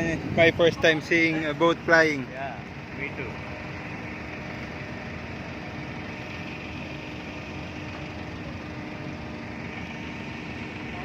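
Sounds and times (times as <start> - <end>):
crane engine humming: 0.0 - 11.0.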